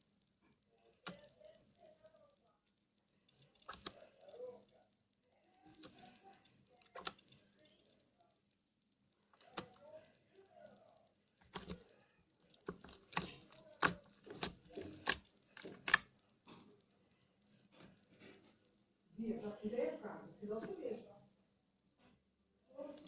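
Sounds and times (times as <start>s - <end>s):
slime popping and clicking: 12.6s - 16.2s.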